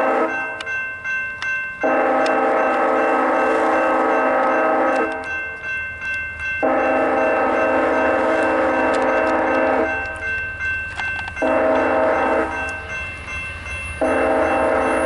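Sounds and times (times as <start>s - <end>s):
locomotive air horn chord: 0.0s - 0.4s, 1.8s - 5.3s, 6.6s - 10.0s, 11.4s - 12.6s, 14.0s - 15.0s
crossing bell dinging rapidly: 0.0s - 15.0s.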